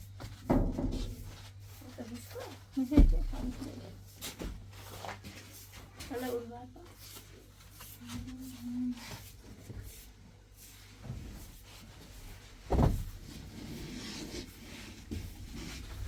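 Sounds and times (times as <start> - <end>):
loud thump: 12.7 - 13.1.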